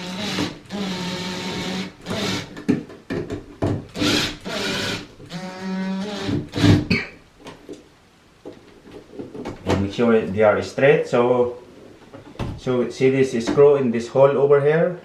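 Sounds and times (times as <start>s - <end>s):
power drill driving screws: 0.0s - 2.6s, 3.9s - 6.9s.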